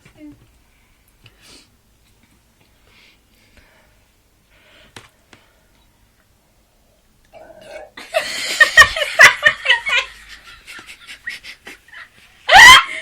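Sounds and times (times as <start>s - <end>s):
person burping: 7.3s - 8.0s.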